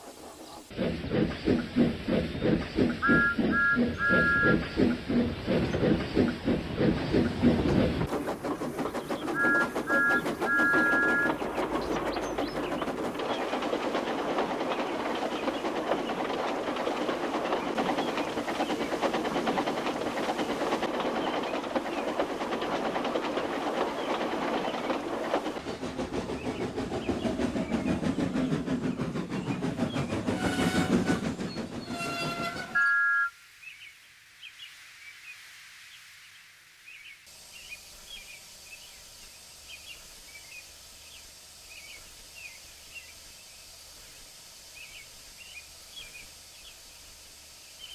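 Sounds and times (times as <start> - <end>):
steam locomotive running: 0.0 - 32.9, 37.3 - 47.9
coaches rattling on track: 0.2 - 32.8
train whistle: 3.0 - 4.6, 9.4 - 11.4, 30.3 - 33.3.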